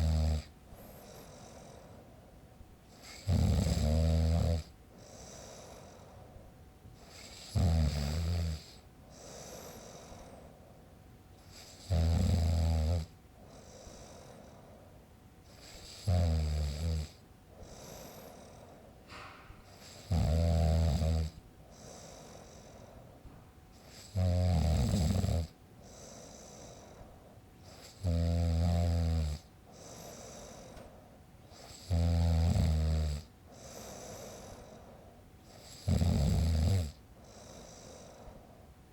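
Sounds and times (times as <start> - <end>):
man snoring: 0.0 - 1.8, 3.0 - 6.0, 7.0 - 10.3, 11.5 - 14.4, 15.5 - 18.7, 19.8 - 22.9, 23.8 - 27.0, 27.6 - 30.8, 31.5 - 34.8, 35.5 - 38.4
soft breathing: 0.6 - 3.3, 4.7 - 7.6, 8.7 - 11.8, 13.3 - 16.0, 17.4 - 20.1, 21.3 - 24.2, 25.8 - 28.0, 29.4 - 31.9, 33.4 - 35.9, 36.9 - 38.9.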